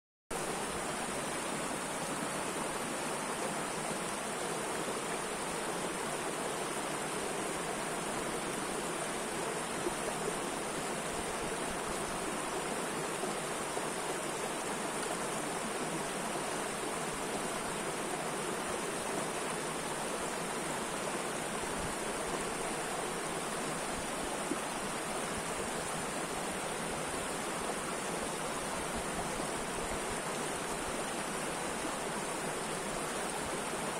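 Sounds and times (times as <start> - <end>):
river water rushing: 0.4 - 33.9.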